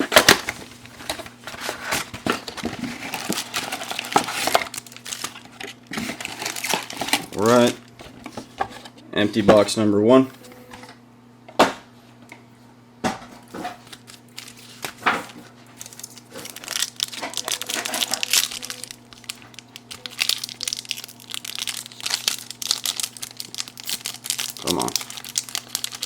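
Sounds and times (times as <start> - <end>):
plastic wrappers crinkling: 0.0 - 8.4, 13.5 - 26.0.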